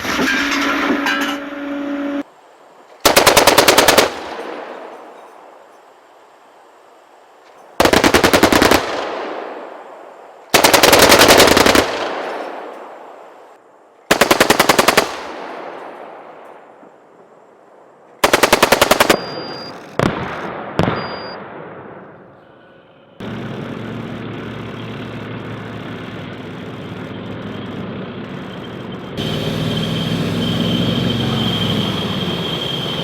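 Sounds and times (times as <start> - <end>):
automatic gunfire: 3.0 - 4.6, 7.8 - 9.6, 10.5 - 12.5, 14.1 - 15.6, 18.2 - 21.4
single gunshots: 18.2 - 22.2.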